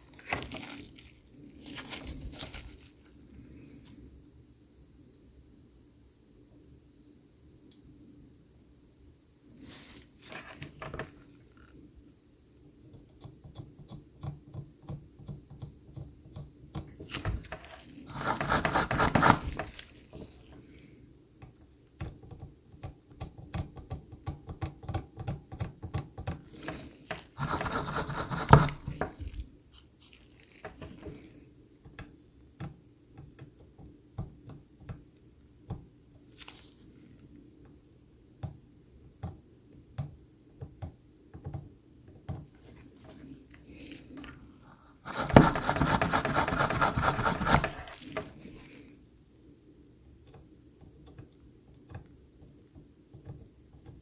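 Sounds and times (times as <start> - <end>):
fast rubbing strokes: 18.0 - 19.8, 27.4 - 29.3, 44.7 - 48.4.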